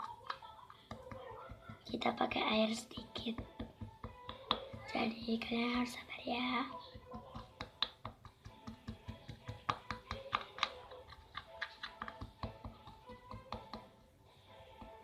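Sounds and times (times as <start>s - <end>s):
spoon tapping and scraping in bowl: 6.7s - 13.9s.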